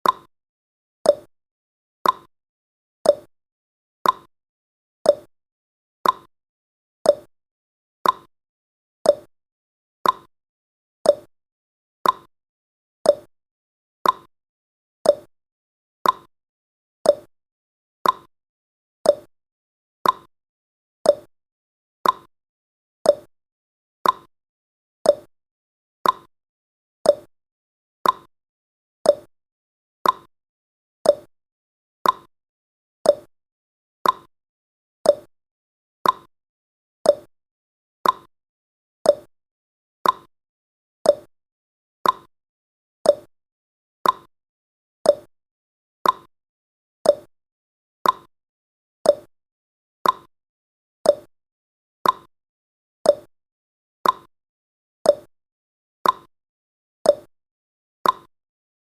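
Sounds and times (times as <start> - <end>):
clock ticking: 18.0 - 18.3, 34.0 - 34.3, 42.0 - 42.3, 50.0 - 50.3, 58.0 - 58.3.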